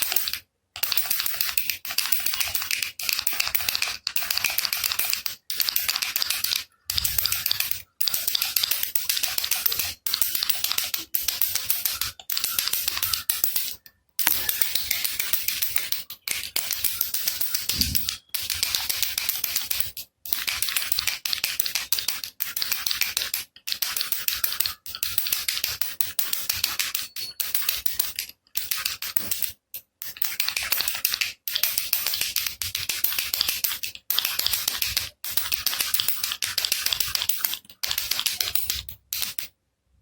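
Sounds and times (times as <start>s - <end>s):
baby rattle shaken: 11.8s - 18.7s.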